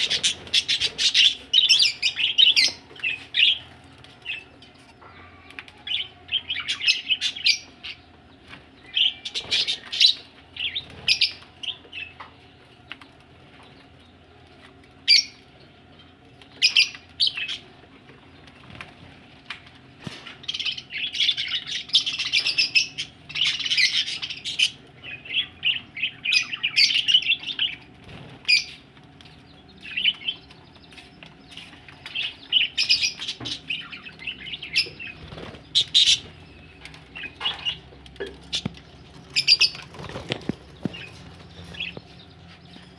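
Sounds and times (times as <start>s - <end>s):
budgerigars chirping: 0.0s - 3.6s, 20.5s - 27.8s, 29.5s - 37.9s, 38.5s - 42.9s.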